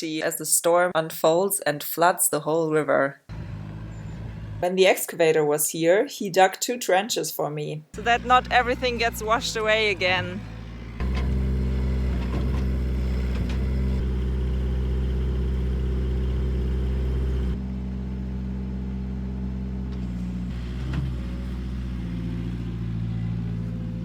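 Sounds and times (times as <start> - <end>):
excavator diesel engine running: 3.3 - 4.6, 8.0 - 24.0.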